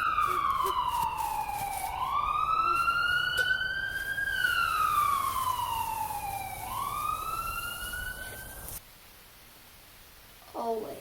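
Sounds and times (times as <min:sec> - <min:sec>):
emergency siren wailing: 0:00.0 - 0:08.8.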